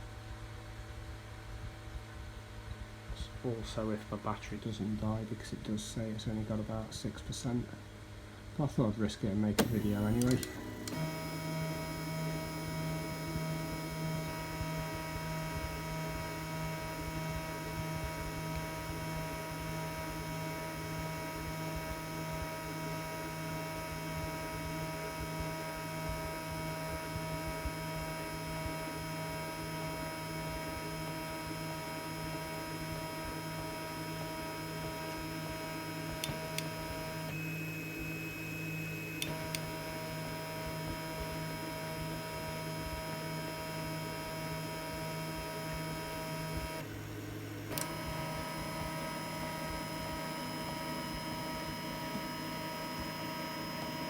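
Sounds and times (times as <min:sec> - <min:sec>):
printer fans and motors humming: 0:09.5 - 0:54.0
printer clicks: 0:09.6 - 0:11.2.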